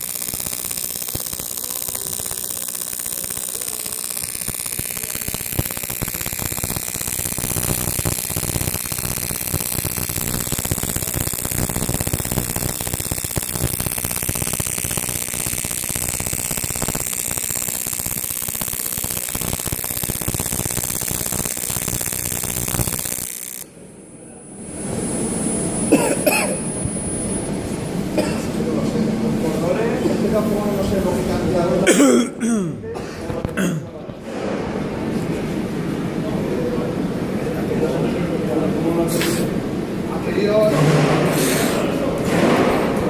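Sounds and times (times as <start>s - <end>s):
welding arc buzzing: 0.0s - 23.8s, 24.6s - 32.1s.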